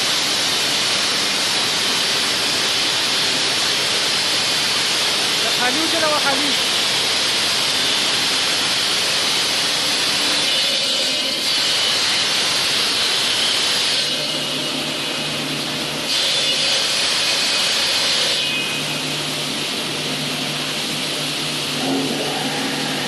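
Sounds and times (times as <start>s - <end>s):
marble cutter cutting stone: 9.0s - 14.5s, 16.1s - 18.7s.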